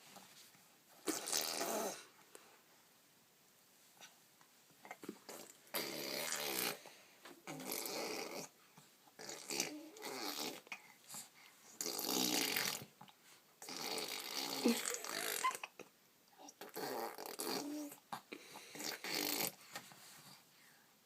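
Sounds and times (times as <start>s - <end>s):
baby blowing raspberries: 1.0s - 2.1s, 5.3s - 8.5s, 11.8s - 12.9s, 13.6s - 15.7s, 18.6s - 19.6s.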